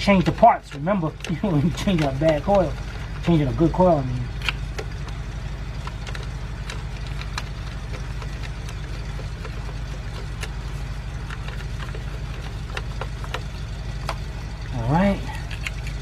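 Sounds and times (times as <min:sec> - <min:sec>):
pulsing engine hum: 0:00.0 - 0:16.0
clicks and knocks of parts handled: 0:00.2 - 0:03.4, 0:05.8 - 0:14.3, 0:15.3 - 0:16.0.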